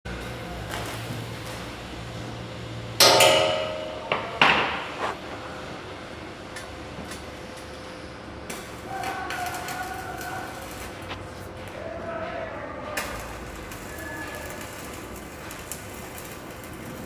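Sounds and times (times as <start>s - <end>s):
hammer striking steel: 3.0s - 5.2s.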